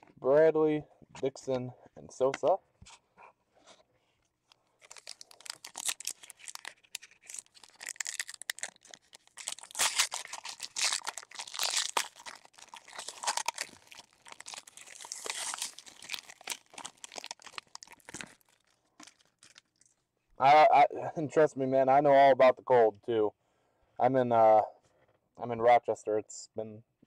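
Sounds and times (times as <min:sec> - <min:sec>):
foil wrappers crinkling and tearing: 0:04.8 - 0:19.8.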